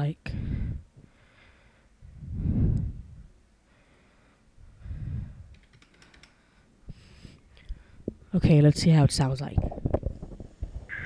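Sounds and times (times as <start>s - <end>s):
person breathing out heavily: 0.3s - 5.5s
quick clicks: 5.5s - 6.4s.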